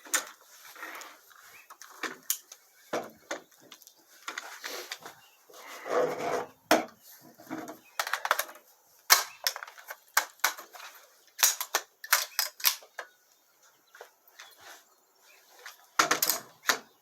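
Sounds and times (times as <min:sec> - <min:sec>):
rustle: 0:00.0 - 0:11.7
rifle parts clicking and clacking: 0:01.8 - 0:02.6, 0:07.6 - 0:13.2, 0:16.0 - 0:16.9.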